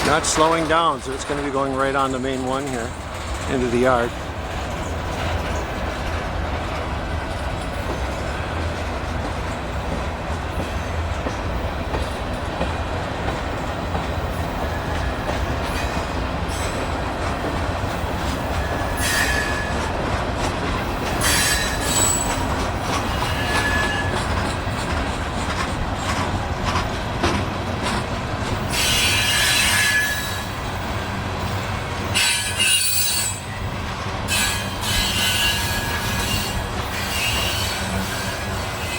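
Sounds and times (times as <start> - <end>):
train wheel squeals: 0.0 - 4.1, 13.5 - 26.9, 27.8 - 38.9
train wheels rumbling on rails: 0.0 - 38.9.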